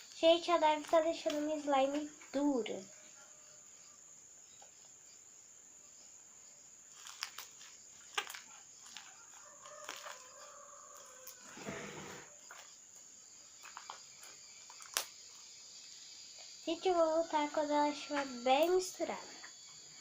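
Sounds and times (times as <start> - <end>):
slime kneaded by hand: 6.9 - 10.3.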